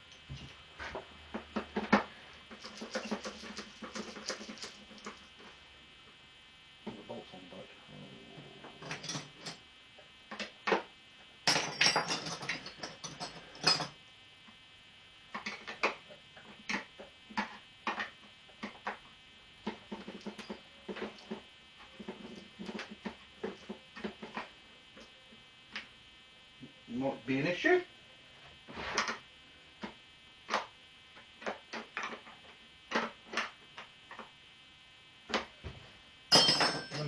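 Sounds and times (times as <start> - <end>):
faint electrical hum: 0.0 - 37.0
hand tools clinking on metal: 36.3 - 37.0.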